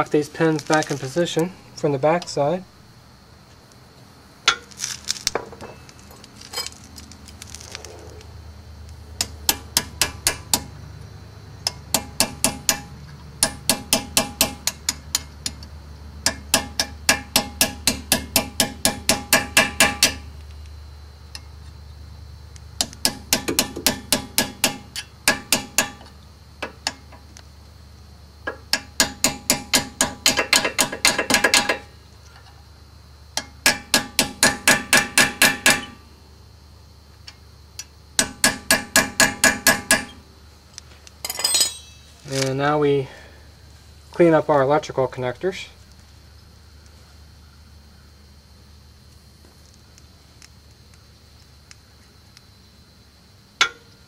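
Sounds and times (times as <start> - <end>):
hammer tapping metal pins: 23.0 - 27.1, 28.5 - 31.9, 38.2 - 40.2.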